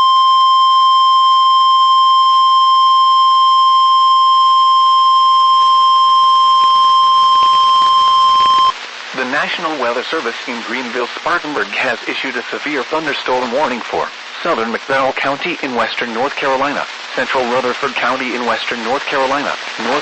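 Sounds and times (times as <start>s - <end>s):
high-pitched alarm tone: 0.0s - 8.8s.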